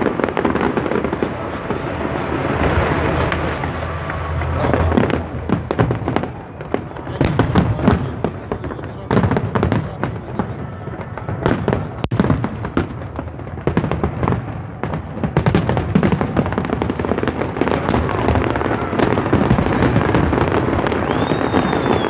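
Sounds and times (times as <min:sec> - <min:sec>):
fireworks bangs and crackles: 0:00.0 - 0:22.0
high firework whistle: 0:17.6 - 0:22.0.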